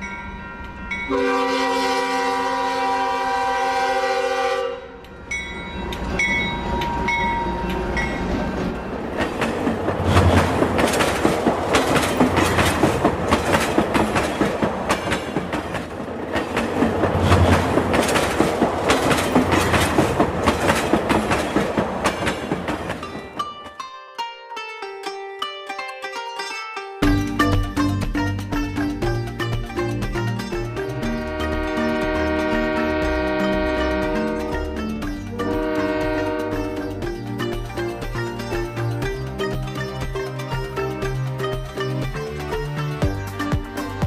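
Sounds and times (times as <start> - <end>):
electronic train horn: 1.1 - 5.2, 30.9 - 37.0
toy train clicking along track: 9.2 - 23.4.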